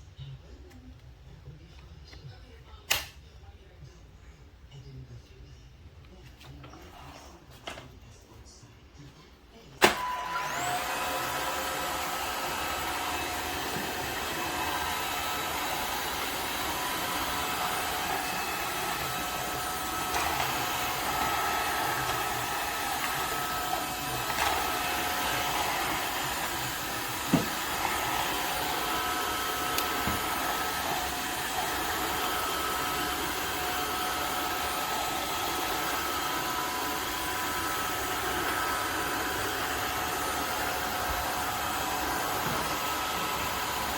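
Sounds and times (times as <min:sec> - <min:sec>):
vacuum motor whine: 0:09.8 - 0:43.9.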